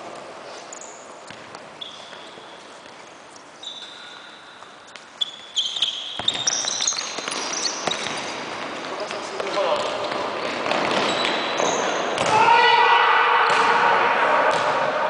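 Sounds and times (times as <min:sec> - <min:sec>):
shoes squeaking on floor: 0:00.4 - 0:12.2
ball kicked and bouncing: 0:01.2 - 0:02.2, 0:06.2 - 0:12.4.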